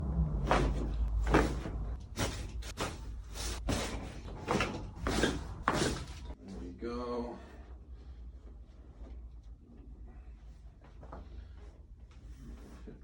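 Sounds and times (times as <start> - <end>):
low hum: 0.0 - 3.5.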